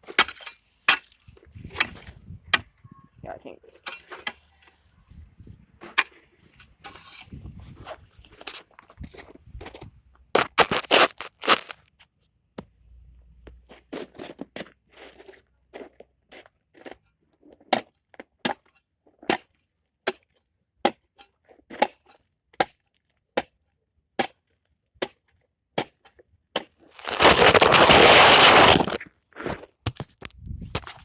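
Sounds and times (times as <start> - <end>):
ice chopper crunching ice: 10.4 - 11.9, 27.0 - 29.0.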